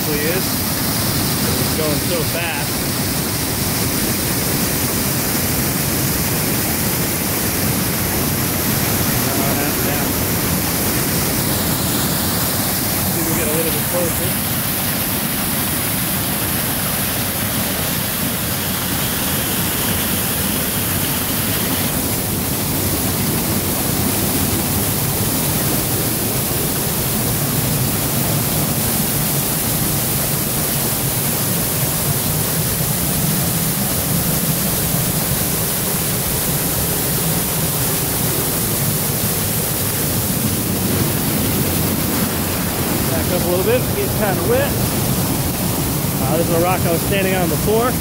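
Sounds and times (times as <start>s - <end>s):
waterfall rushing: 0.0s - 48.0s.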